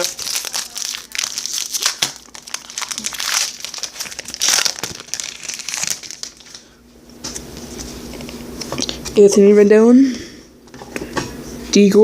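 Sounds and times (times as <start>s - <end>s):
wrapper crinkling and tearing: 0.0s - 6.8s.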